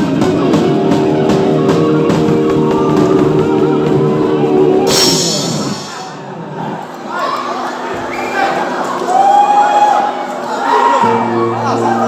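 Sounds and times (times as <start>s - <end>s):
rock band playing live: 0.0s - 6.2s
cymbal crash: 4.8s - 6.4s.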